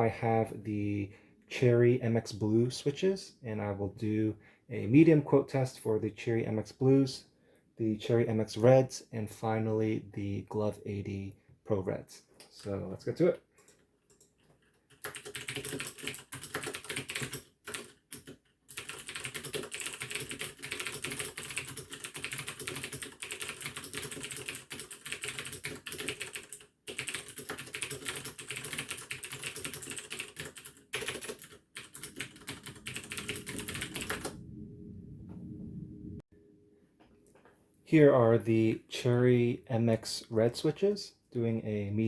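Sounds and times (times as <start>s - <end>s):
mechanical keyboard typing: 13.6s - 34.4s.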